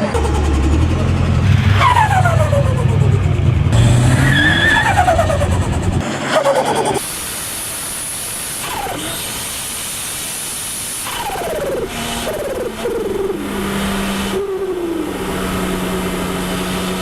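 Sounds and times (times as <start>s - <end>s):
turbo car engine revving: 0.0s - 7.1s, 11.0s - 17.0s
falling whine: 0.0s - 17.0s
steady hiss: 7.0s - 12.5s.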